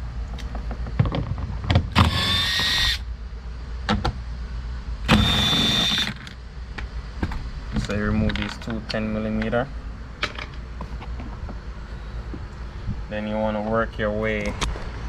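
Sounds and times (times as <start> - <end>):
cordless power tool whining: 2.0 - 3.0, 5.1 - 6.3.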